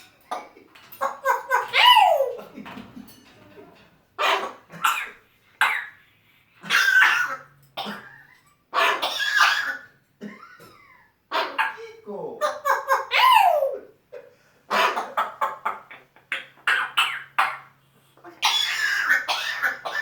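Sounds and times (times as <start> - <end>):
parrot coughing: 4.2 - 6.0, 6.6 - 20.0.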